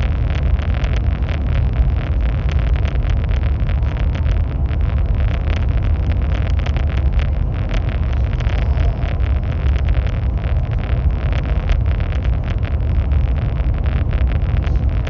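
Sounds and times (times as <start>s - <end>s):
train rumbling: 0.0s - 15.0s.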